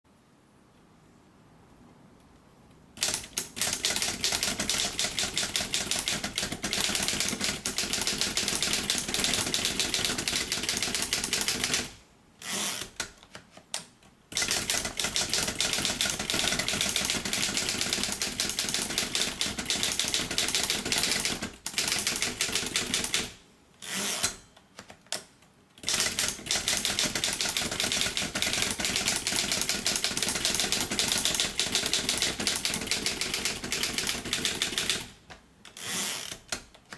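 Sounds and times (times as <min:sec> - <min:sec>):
manual typewriter keystrokes: 0:03.0 - 0:12.0, 0:12.8 - 0:23.4, 0:24.2 - 0:36.9.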